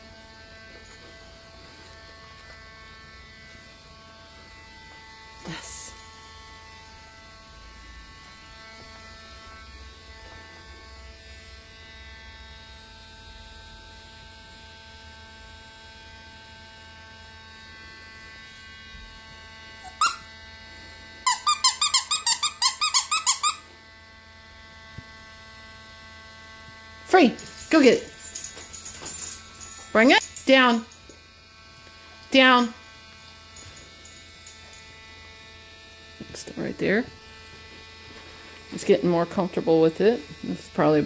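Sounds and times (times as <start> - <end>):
sharp high squeaks: 19.8 - 20.3, 21.3 - 23.6.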